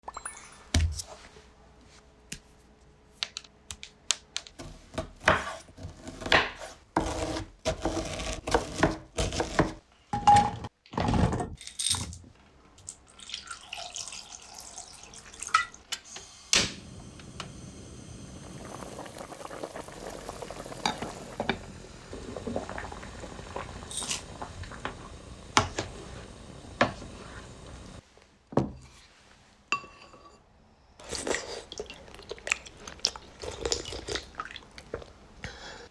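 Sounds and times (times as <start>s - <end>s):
running water: 12.9s - 15.9s
dishes and utensils clinking: 29.7s - 30.4s.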